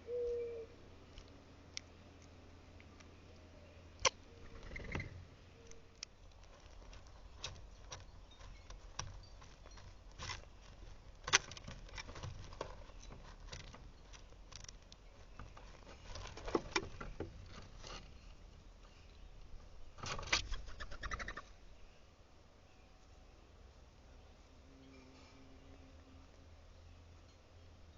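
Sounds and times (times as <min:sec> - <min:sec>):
birds pecking and tapping: 0:04.0 - 0:21.4.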